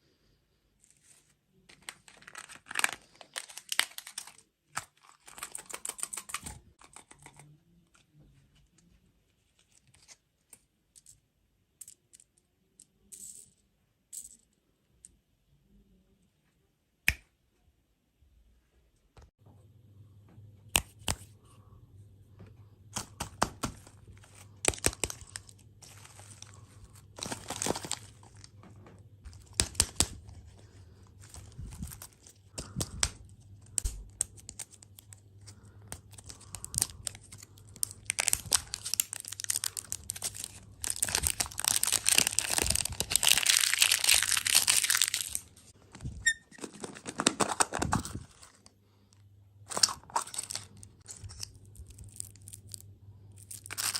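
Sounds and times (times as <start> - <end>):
packaging crinkled and torn: 1.0 - 7.6, 23.0 - 28.7, 29.3 - 48.7, 49.7 - 53.9.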